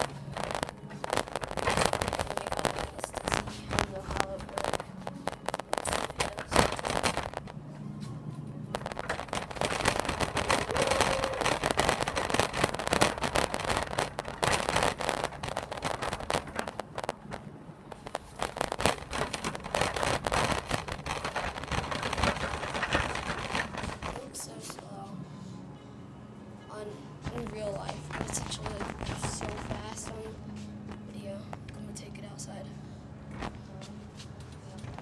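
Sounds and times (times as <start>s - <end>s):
cart wheels rattling on floor: 18.3s - 24.4s.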